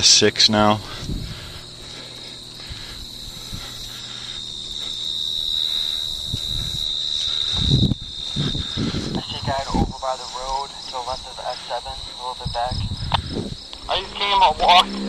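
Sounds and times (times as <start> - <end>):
insects trilling: 0.0 - 15.0
low thumps or rustles: 7.5 - 9.0.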